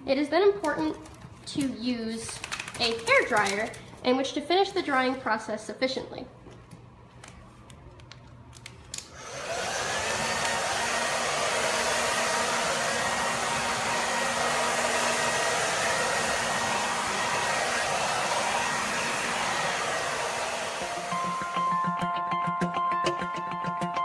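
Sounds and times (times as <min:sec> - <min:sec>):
hair dryer running: 0:09.0 - 0:22.0.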